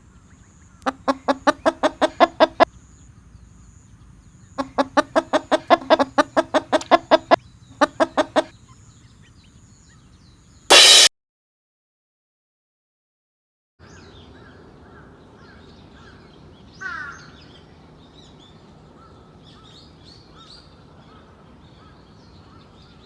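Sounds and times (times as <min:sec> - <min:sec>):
ducks quacking: 0:00.8 - 0:02.7, 0:04.6 - 0:08.5
loud burst of noise: 0:10.7 - 0:11.1.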